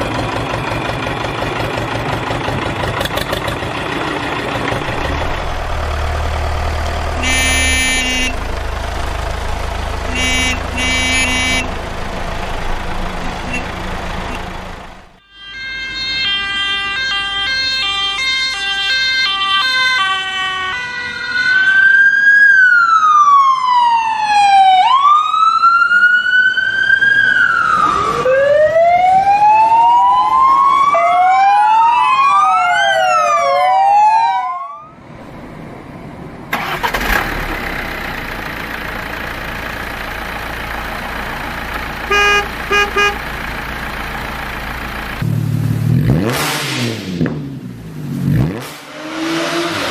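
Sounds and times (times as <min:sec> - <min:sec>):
car running: 0:00.0 - 0:15.2, 0:35.0 - 0:49.9
ambulance siren: 0:07.2 - 0:08.4, 0:10.1 - 0:11.8, 0:15.2 - 0:35.0, 0:42.1 - 0:43.2
short beeps: 0:07.2 - 0:08.4, 0:10.2 - 0:11.7.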